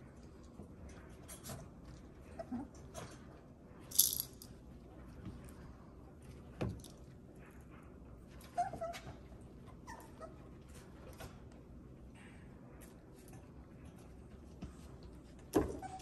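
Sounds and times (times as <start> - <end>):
puppies squeaking and whimpering: 8.4 - 10.5, 15.8 - 16.0.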